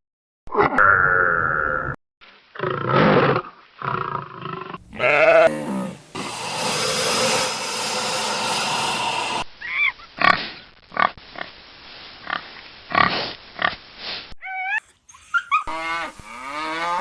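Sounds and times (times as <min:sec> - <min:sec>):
long rough animal call: 0:02.6 - 0:09.4, 0:14.6 - 0:17.0
animal calls: 0:04.8 - 0:10.4, 0:14.4 - 0:17.0.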